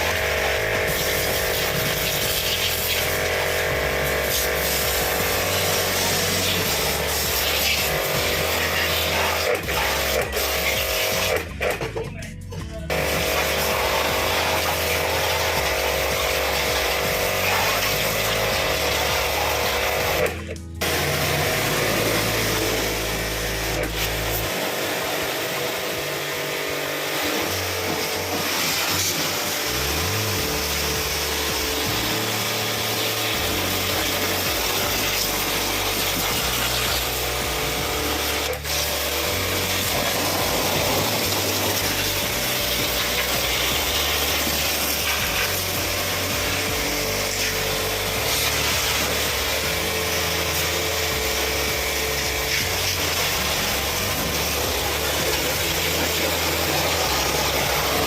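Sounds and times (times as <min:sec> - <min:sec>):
background music: 0:00.0 - 0:58.0
loud steady motor noise: 0:00.0 - 0:58.0.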